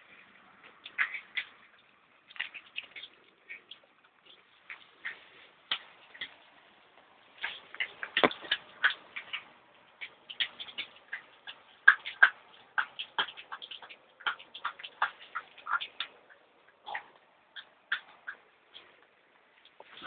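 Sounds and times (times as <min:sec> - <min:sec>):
puppies' light clicks and taps: 0:00.0 - 0:20.0.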